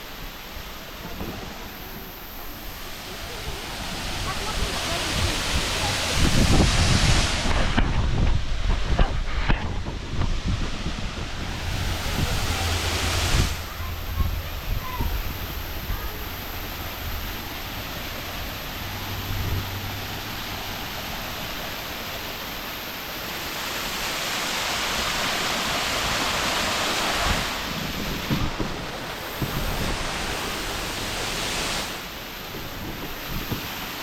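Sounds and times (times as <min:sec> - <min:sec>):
waterfall rushing: 0:00.0 - 0:34.0
low bumps: 0:04.2 - 0:21.2.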